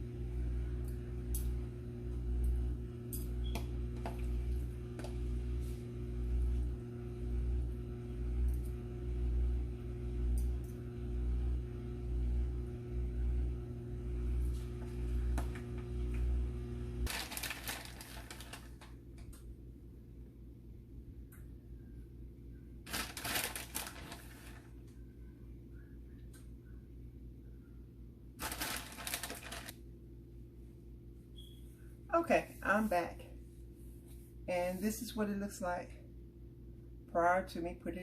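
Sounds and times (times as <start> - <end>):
pulsing machine hum: 0.0 - 18.8.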